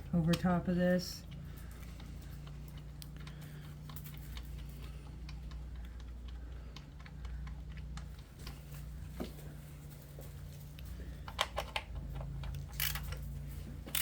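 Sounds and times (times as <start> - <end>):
steady low hum: 0.0 - 14.0
ratchet clicking: 12.7 - 13.2.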